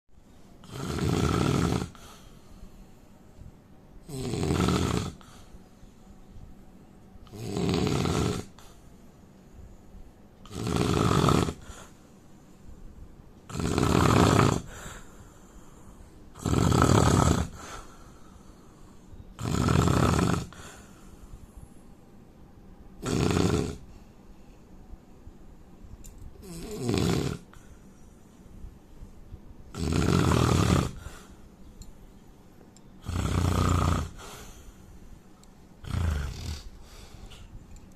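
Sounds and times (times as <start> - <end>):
man snoring: 0.6 - 2.1, 4.0 - 5.5, 7.3 - 8.7, 10.4 - 11.9, 13.5 - 15.1, 16.3 - 17.9, 19.4 - 20.8, 23.0 - 23.9, 26.4 - 27.6, 29.7 - 31.3, 33.0 - 34.7, 35.8 - 36.8.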